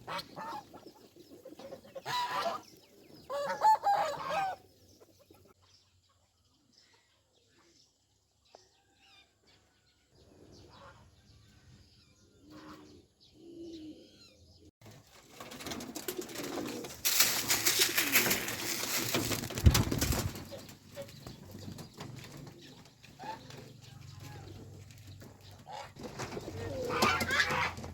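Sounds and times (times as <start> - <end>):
birds cooing and calling: 0.0 - 5.5, 12.0 - 14.7, 16.0 - 27.9
flapping wings: 14.8 - 22.7, 26.0 - 27.9.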